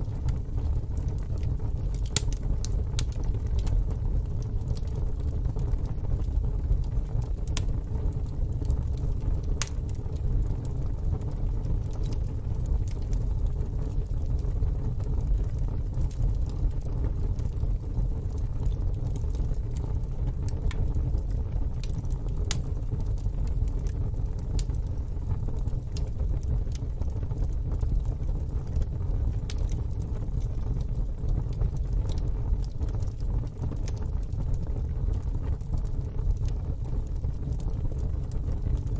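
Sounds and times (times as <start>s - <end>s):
fire crackling and popping: 0.0s - 38.9s
fire rumbling: 0.0s - 38.9s.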